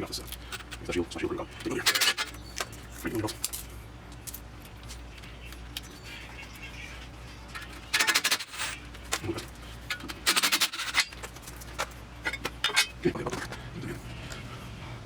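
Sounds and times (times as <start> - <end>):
ratchet wrench clicking: 10.2 - 11.2.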